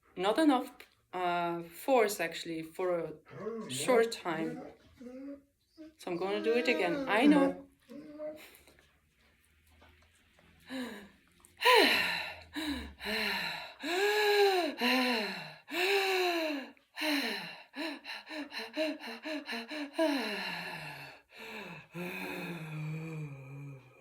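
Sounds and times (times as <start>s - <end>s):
woman breathing fast with cries: 10.7s - 23.2s.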